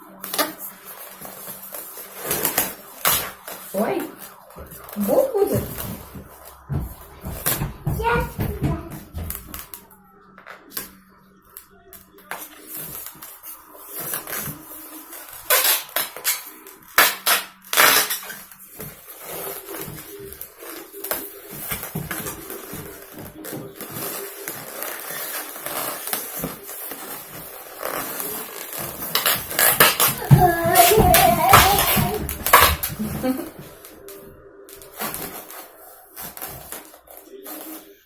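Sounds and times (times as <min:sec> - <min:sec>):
voices: 0:03.7 - 0:13.8, 0:29.3 - 0:36.0.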